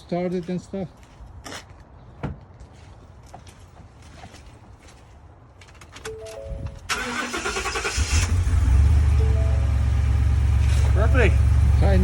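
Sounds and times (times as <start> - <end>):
car starter cranking: 6.8 - 8.9
car engine running: 8.1 - 12.0.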